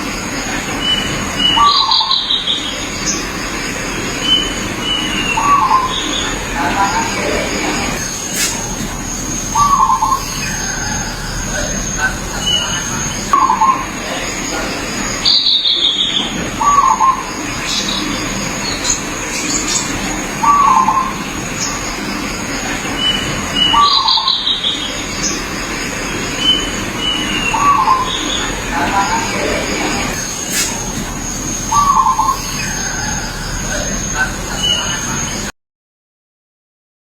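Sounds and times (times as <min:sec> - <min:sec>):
thin high whine: 0:00.0 - 0:35.5
background hiss: 0:03.4 - 0:15.5, 0:25.6 - 0:35.5
dove cooing: 0:04.0 - 0:35.5.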